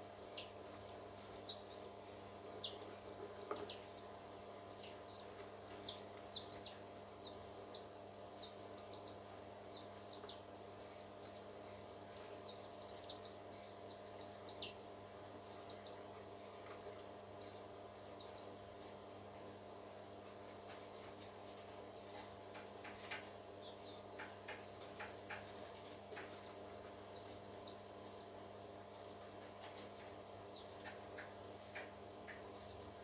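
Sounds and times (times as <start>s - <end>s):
bird chirping: 0.0s - 14.8s, 15.4s - 16.7s, 22.2s - 28.3s, 28.9s - 32.8s
steady low hum: 0.0s - 33.0s.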